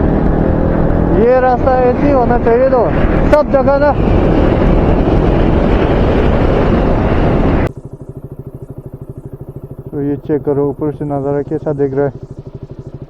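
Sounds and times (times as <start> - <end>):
wind rushing on microphone: 0.0 - 7.7
motorcycle engine idling: 0.0 - 13.0.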